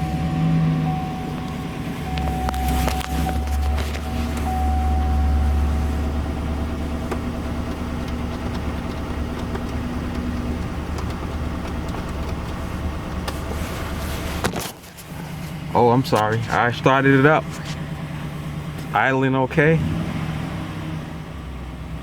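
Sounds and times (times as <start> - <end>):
faint steady whine: 0.0 - 9.1
truck engine idling: 0.0 - 19.8.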